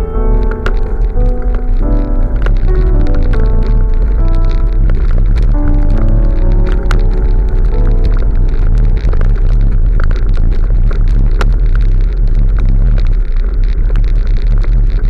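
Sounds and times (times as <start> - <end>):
wind and road noise rumble: 0.0 - 15.0.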